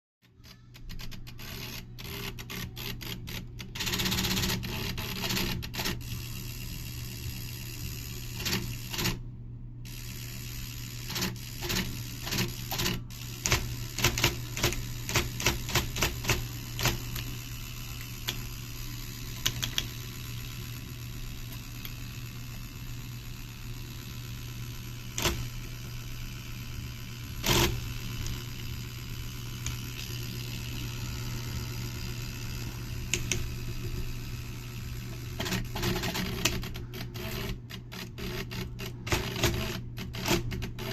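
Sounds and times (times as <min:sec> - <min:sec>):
typewriter motor humming: 0:00.3 - 0:09.2, 0:09.8 - 0:40.9
typewriter mechanism clacking: 0:00.4 - 0:06.0, 0:08.4 - 0:09.2, 0:11.1 - 0:17.3, 0:19.3 - 0:19.9, 0:25.1 - 0:25.8, 0:27.4 - 0:28.4, 0:35.1 - 0:40.9.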